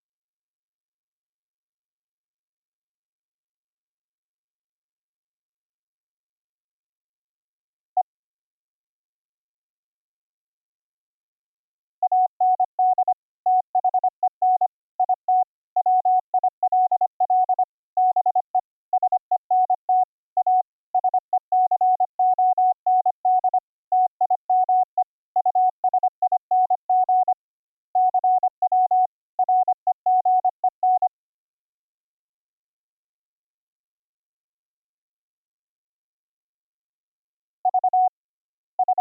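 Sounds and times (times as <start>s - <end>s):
morse code beeps: 12.0s - 27.4s, 28.0s - 31.1s, 37.7s - 38.1s, 38.8s - 39.0s.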